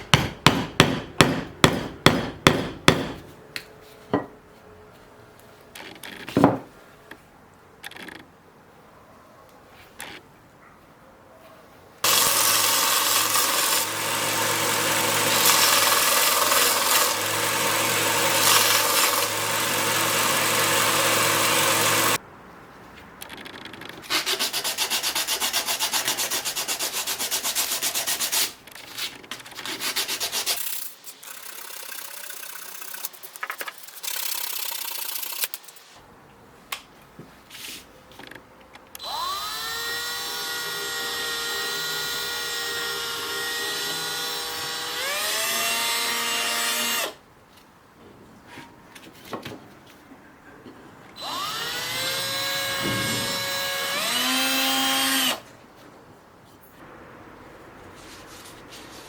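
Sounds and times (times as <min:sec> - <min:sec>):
small electric tool motor whine: 0:12.0 - 0:22.2, 0:39.0 - 0:47.2, 0:51.2 - 0:55.4.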